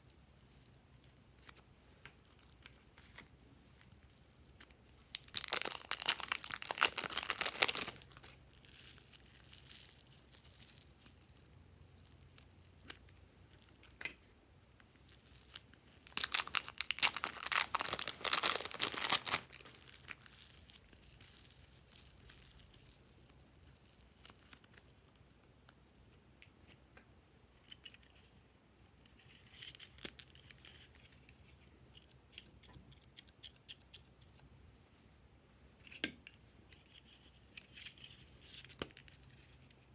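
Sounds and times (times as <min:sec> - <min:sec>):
crinkling handled by hand: 0:00.0 - 0:14.2, 0:14.8 - 0:26.2.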